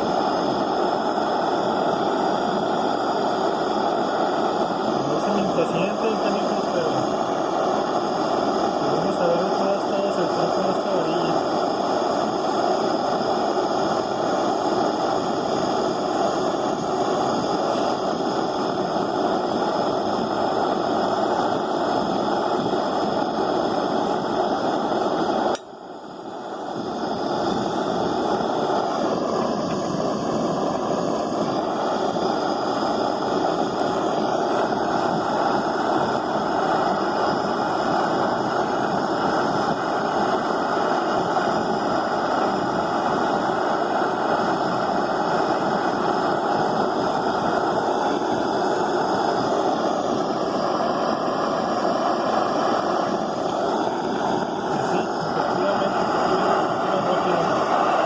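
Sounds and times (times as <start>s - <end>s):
gas torch roaring: 0.0s - 58.0s.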